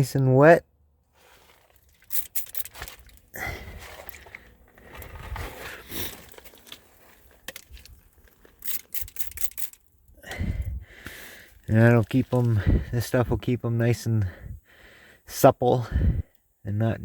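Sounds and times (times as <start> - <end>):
handling noise: 1.2 - 9.9
sharp clicks: 8.6 - 9.8.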